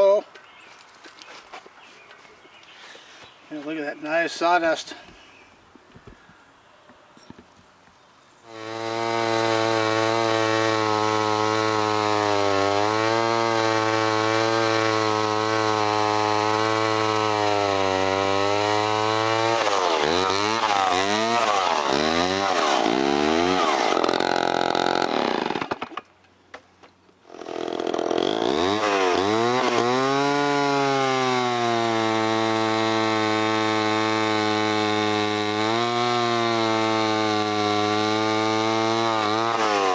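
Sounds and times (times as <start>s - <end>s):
chainsaw cutting log: 8.4s - 26.2s, 27.1s - 39.9s.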